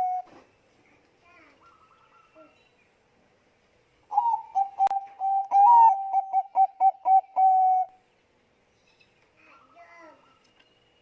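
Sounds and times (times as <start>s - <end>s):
dove cooing: 0.0s - 0.4s, 4.1s - 8.0s.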